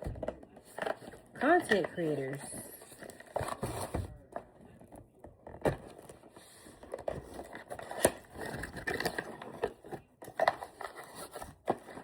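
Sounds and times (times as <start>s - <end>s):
rustling and scraping of packaging: 0.0s - 12.0s.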